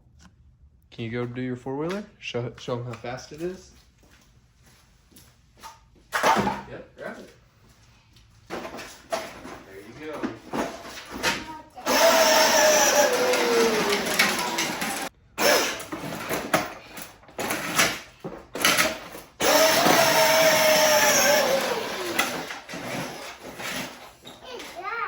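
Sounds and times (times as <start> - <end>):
wheels rolling: 8.5 - 24.9
electric toy motor whining: 11.8 - 16.0, 19.4 - 24.2.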